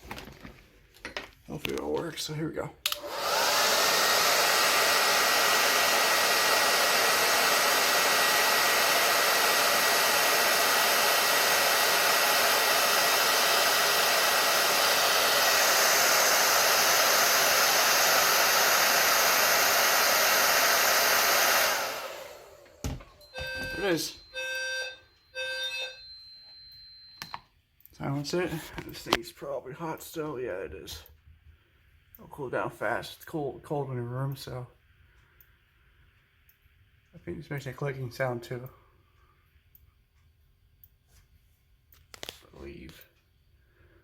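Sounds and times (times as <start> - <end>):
hot-air blower motor whine: 2.9 - 26.2.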